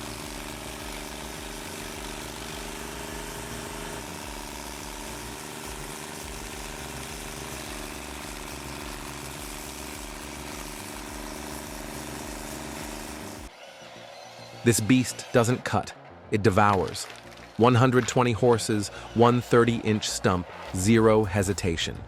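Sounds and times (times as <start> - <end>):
engine humming steadily: 0.0 - 13.5.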